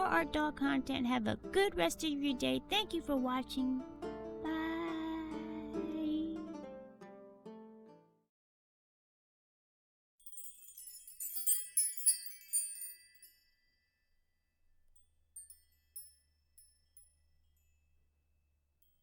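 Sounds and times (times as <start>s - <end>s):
high tinkling chimes: 10.2s - 14.2s, 14.9s - 17.9s.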